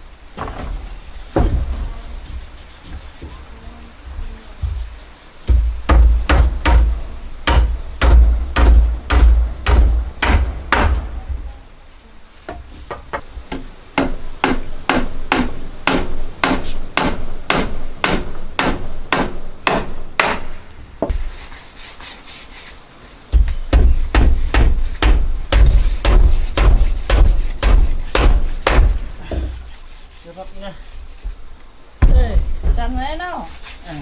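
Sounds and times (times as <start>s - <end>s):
hammer striking wood: 5.4s - 11.6s, 12.5s - 21.2s, 23.3s - 29.7s.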